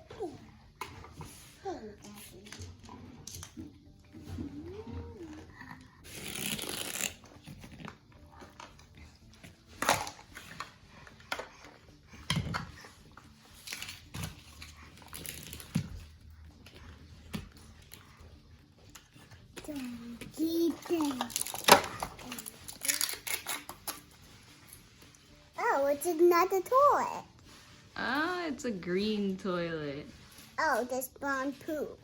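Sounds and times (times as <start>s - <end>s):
wrapper crinkling and tearing: 6.1s - 8.0s, 20.8s - 24.2s.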